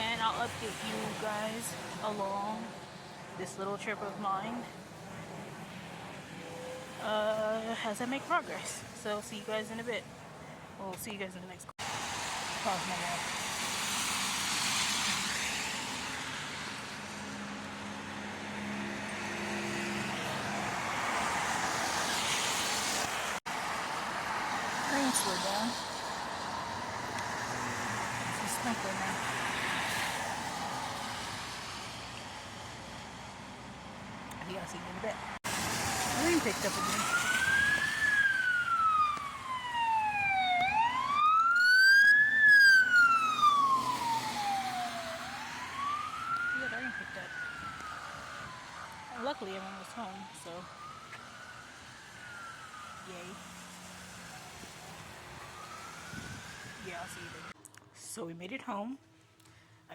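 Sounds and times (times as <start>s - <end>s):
rain hissing: 11.8s - 17.1s
tyres hissing on wet pavement: 11.8s - 17.6s, 18.6s - 33.3s, 35.5s - 38.7s
emergency siren wailing: 12.7s - 33.0s, 35.5s - 57.6s.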